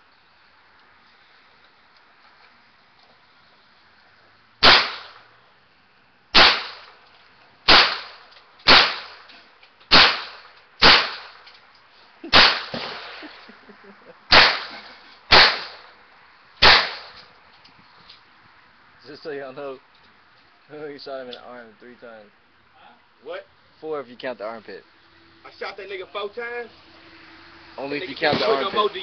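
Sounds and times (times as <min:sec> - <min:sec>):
gunshots with echo: 0:04.6 - 0:05.2, 0:07.7 - 0:09.2, 0:09.9 - 0:11.4, 0:12.3 - 0:13.2, 0:14.3 - 0:15.8, 0:16.6 - 0:17.1.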